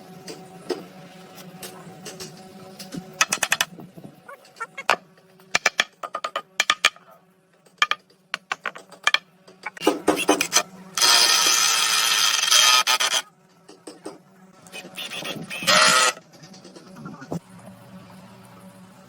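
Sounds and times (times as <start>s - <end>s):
harsh woodworking tool noise: 3.2s - 3.7s, 4.6s - 7.0s, 7.8s - 13.3s, 14.8s - 16.2s.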